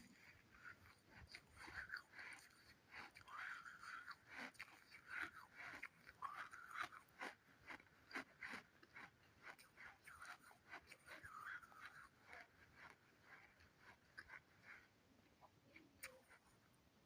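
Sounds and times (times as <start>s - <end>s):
dry clay crunching: 3.9s - 11.2s.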